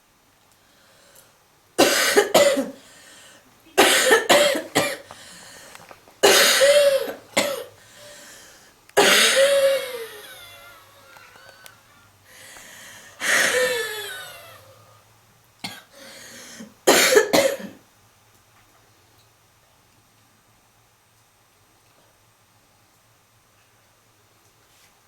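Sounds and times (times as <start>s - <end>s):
person coughing heavily: 1.8s - 2.9s, 3.8s - 5.3s, 6.2s - 7.8s, 9.0s - 11.4s, 13.2s - 14.6s, 15.6s - 17.8s.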